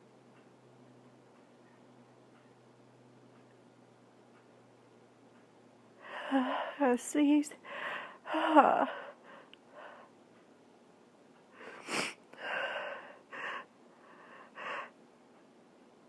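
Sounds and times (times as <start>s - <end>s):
person breathing: 6.0s - 6.8s, 7.6s - 10.1s, 11.5s - 15.0s.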